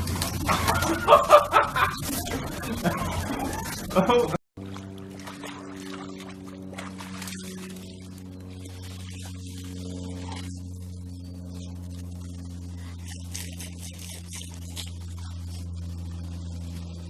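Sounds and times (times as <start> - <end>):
low hum with overtones: 0.0 - 17.0.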